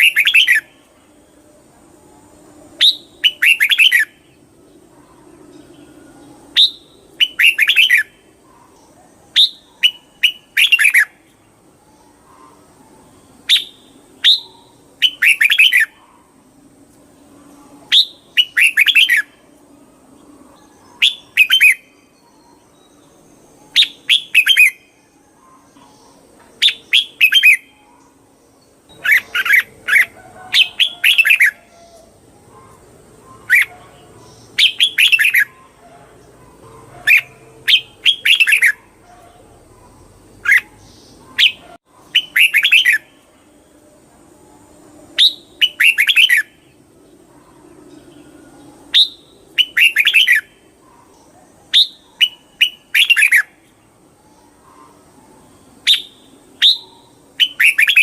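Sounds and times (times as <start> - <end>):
bird singing bubbly phrases: 2.8 - 4.3, 5.9 - 8.2, 9.3 - 11.2, 13.4 - 16.1, 17.8 - 19.4, 40.4 - 43.2, 45.2 - 46.7, 55.8 - 58.0.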